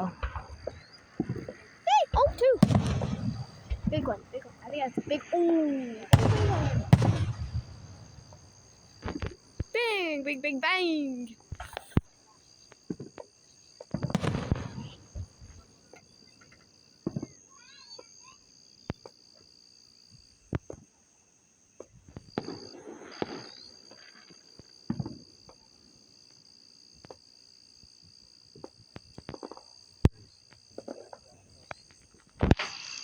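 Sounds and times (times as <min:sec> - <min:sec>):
firework bangs: 0:00.0 - 0:12.0, 0:13.9 - 0:16.0
firework crackling burst: 0:00.0 - 0:12.0, 0:13.9 - 0:15.8, 0:32.4 - 0:33.0
insects chirring: 0:00.0 - 0:33.0.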